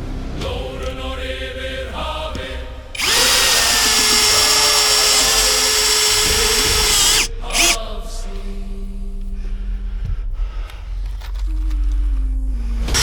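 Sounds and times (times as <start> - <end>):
power drill running: 3.0 - 7.8.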